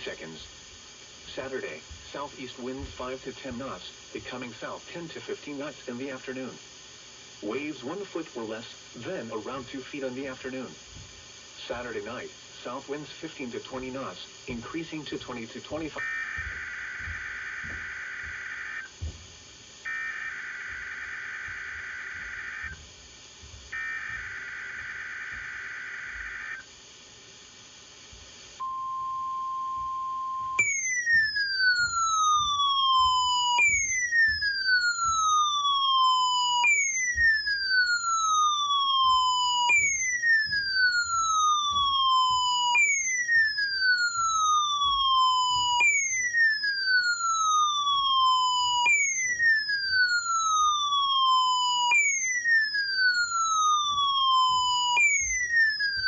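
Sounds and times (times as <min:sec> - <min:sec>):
siren-like tone sliding down: 0:15.8 - 0:18.9, 0:19.9 - 0:22.8, 0:23.7 - 0:26.6, 0:28.6 - 0:56.0
steady alert tone: 0:30.1 - 0:49.2.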